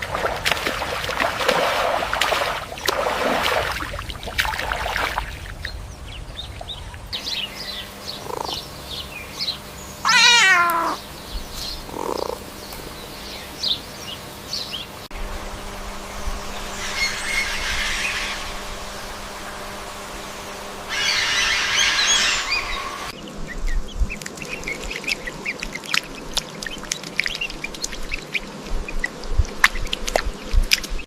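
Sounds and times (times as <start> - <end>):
puppy whining: 10.1 - 11.0.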